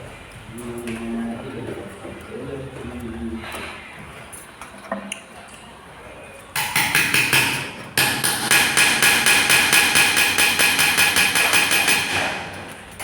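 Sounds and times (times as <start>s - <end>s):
hammer striking metal: 6.6s - 12.6s.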